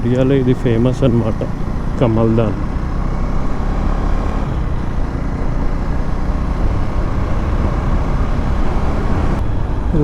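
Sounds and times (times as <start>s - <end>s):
motorcycle engine running: 0.0s - 10.0s
wind noise: 4.4s - 10.0s.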